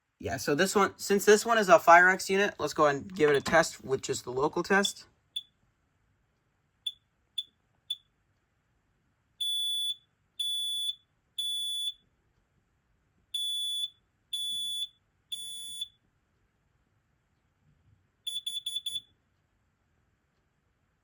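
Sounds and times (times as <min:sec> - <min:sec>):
smoke alarm chirps: 0:09.4 - 0:12.0, 0:13.4 - 0:16.0, 0:18.3 - 0:19.2
shrill alarm horn beeping: 0:13.4 - 0:15.9, 0:18.3 - 0:19.0.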